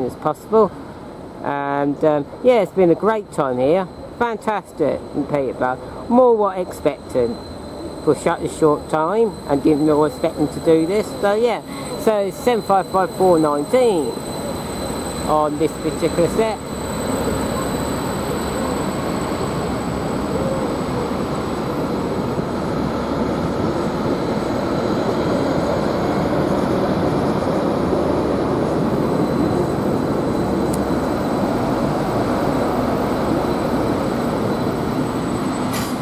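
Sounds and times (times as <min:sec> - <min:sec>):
faint high whine: 0:00.0 - 0:36.0
train rumbling on track: 0:00.0 - 0:36.0.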